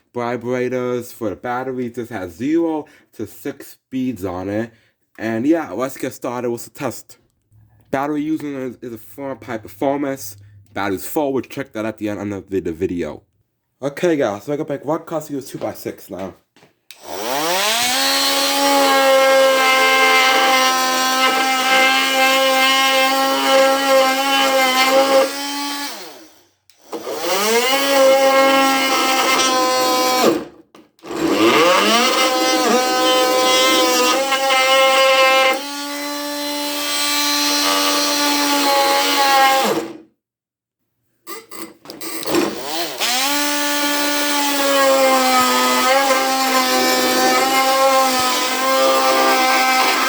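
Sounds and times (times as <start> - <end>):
oscillating multi-tool cutting wood: 16.9 - 40.0, 41.3 - 50.0.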